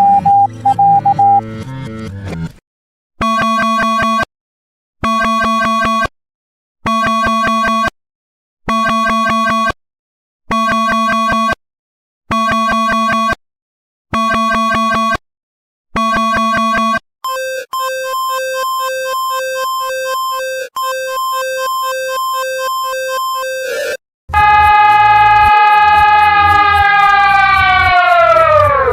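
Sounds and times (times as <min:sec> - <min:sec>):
electronic alarm bursts: 0:00.0 - 0:01.4, 0:17.2 - 0:28.9.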